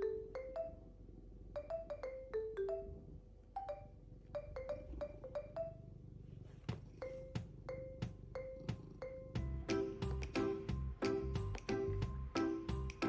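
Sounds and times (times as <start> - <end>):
marimba-like mallet melody: 7.7 - 13.0.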